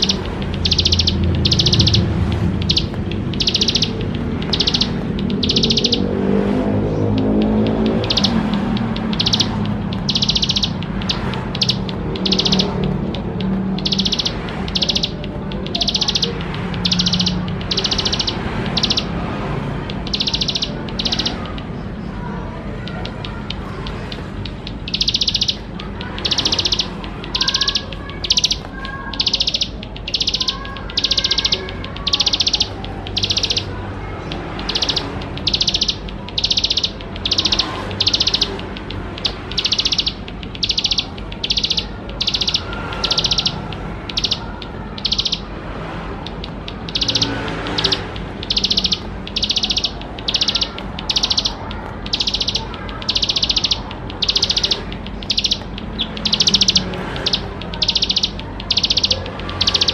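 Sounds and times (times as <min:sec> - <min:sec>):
bird buzzy trilled song: 0:00.0 - 0:59.9.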